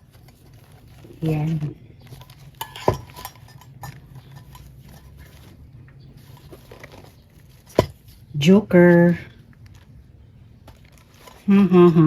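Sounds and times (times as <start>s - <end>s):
low steady hum: 0.0s - 12.0s
camping utensils clicking: 0.3s - 5.6s.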